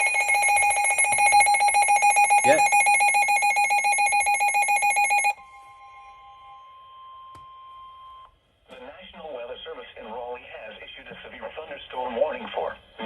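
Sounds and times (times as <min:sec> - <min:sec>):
rapid electronic alarm beeping: 0:00.0 - 0:05.4
steady warning alarm tone: 0:00.0 - 0:06.8.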